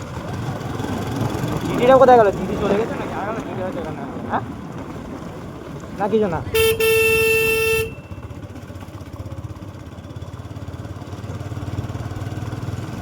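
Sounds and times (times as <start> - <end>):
motorcycle engine humming: 0.0 - 13.0
vehicle horn: 6.4 - 8.4.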